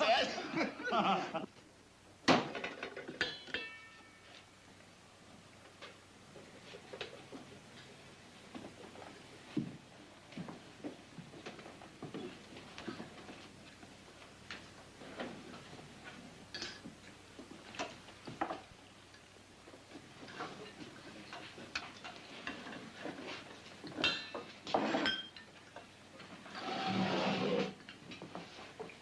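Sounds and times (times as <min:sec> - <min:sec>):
dishes and cutlery clinking: 0:02.4 - 0:04.4, 0:20.2 - 0:25.9.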